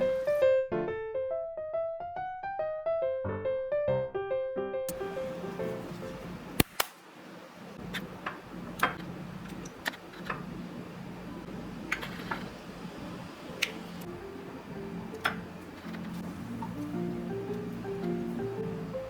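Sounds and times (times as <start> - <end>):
low steady hum: 4.9 - 19.0.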